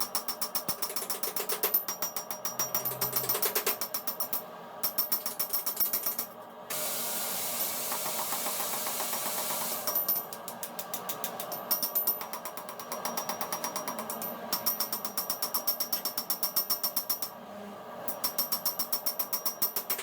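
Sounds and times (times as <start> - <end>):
steady hiss: 6.7 - 9.9
power hammer striking steel: 7.5 - 10.3.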